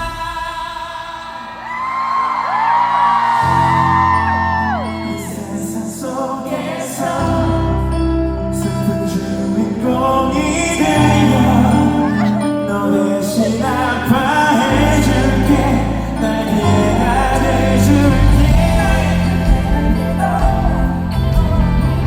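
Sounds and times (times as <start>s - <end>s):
person singing long notes: 3.2s - 22.0s
heavy bass notes: 7.4s - 22.0s
live band playing: 8.6s - 22.0s.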